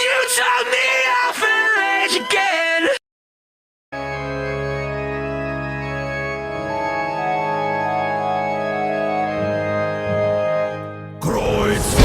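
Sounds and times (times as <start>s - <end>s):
organ playing held chords: 4.0s - 12.0s
low drone: 11.2s - 12.0s.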